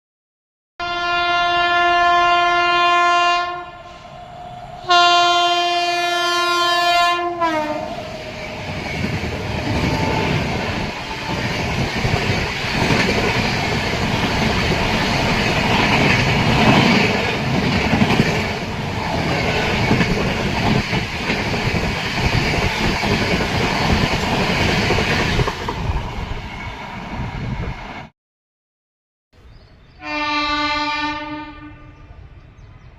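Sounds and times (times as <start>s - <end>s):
train horn blasts: 0.8s - 8.8s, 9.6s - 11.8s, 30.0s - 32.2s
train wheels on track: 3.6s - 28.1s.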